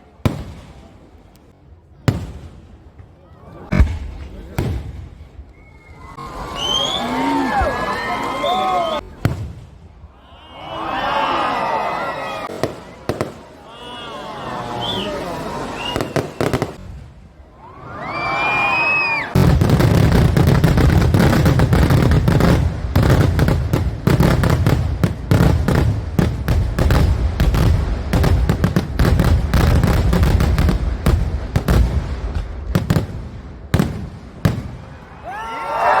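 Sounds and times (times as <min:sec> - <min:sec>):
firecracker bangs and crackles: 0:00.1 - 0:01.1, 0:02.0 - 0:03.0, 0:03.7 - 0:05.5, 0:09.1 - 0:10.1, 0:12.5 - 0:13.6, 0:15.8 - 0:17.3, 0:19.3 - 0:35.2.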